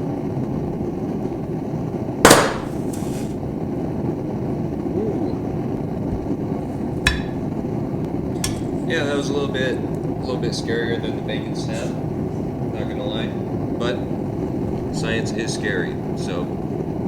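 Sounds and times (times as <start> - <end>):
low background noise: 0.0 - 17.0
firecracker bang: 2.2 - 3.4, 6.0 - 12.7
small sharp crack: 2.3 - 3.3.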